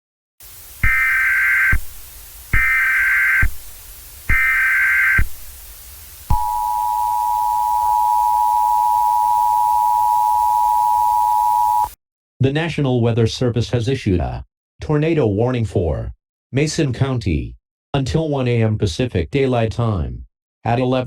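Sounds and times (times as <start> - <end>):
faint hiss: 0.4 - 7.0
data bursts: 0.5 - 12.0
two-tone attention signal: 0.8 - 1.8, 6.3 - 12.0.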